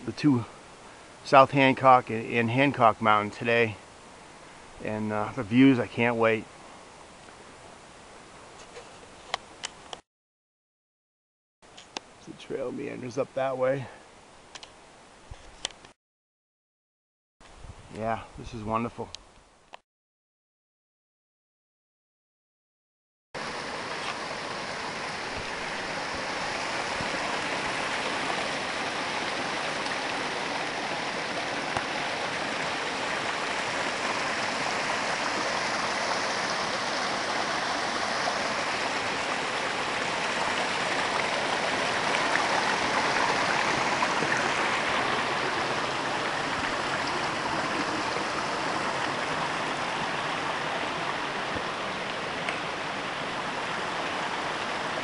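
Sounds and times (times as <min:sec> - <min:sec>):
stream flowing water: 0:23.4 - 0:55.0.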